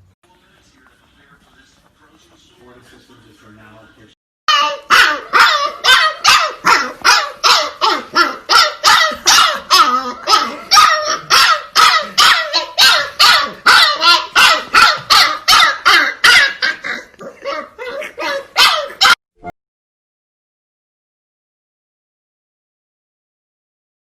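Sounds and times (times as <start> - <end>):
dog yapping: 4.5 - 19.2.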